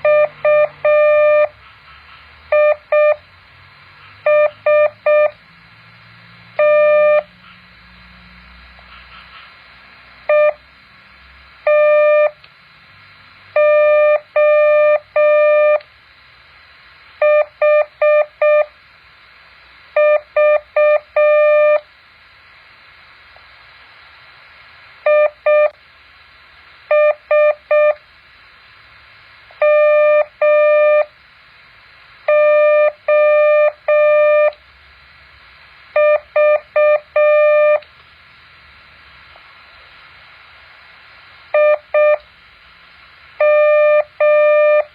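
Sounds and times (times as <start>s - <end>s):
morse code beeps: 0.0s - 1.5s, 2.5s - 3.2s, 4.3s - 5.4s, 6.6s - 7.3s, 10.3s - 10.6s, 11.7s - 12.4s, 13.6s - 15.8s, 17.2s - 18.7s, 20.0s - 21.8s, 25.1s - 25.8s, 26.9s - 28.0s, 29.6s - 31.1s, 32.3s - 34.6s, 36.0s - 37.8s, 41.6s - 42.2s, 43.4s - 44.9s.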